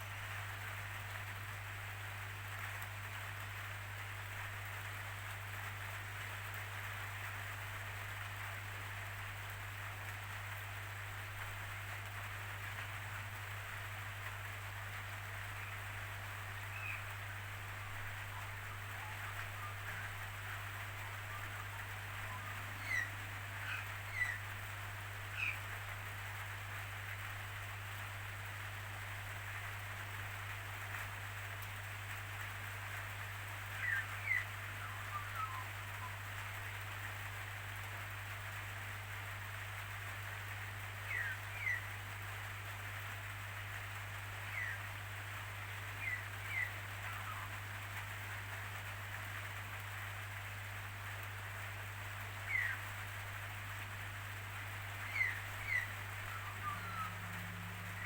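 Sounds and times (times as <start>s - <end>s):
rain falling: 0.0s - 58.0s
bird chirping: 22.2s - 24.4s, 33.8s - 36.2s, 44.5s - 44.8s, 46.0s - 47.5s, 55.0s - 58.0s.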